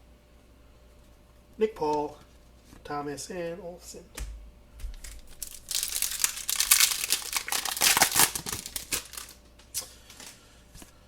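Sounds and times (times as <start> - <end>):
plastic wrapper crinkling: 4.9 - 10.4.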